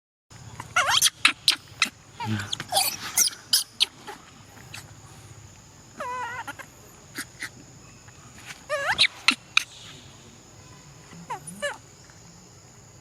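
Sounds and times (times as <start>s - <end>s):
monkey crying: 0.6s - 4.8s, 6.0s - 7.5s, 8.7s - 9.7s, 11.1s - 11.8s.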